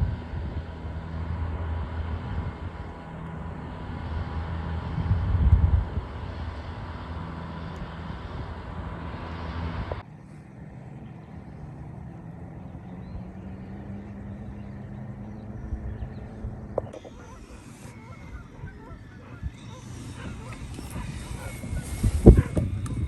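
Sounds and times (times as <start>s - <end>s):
low hum: 0.0s - 23.0s
vehicle engine running: 0.0s - 23.0s
faint bird chirps: 10.1s - 22.6s.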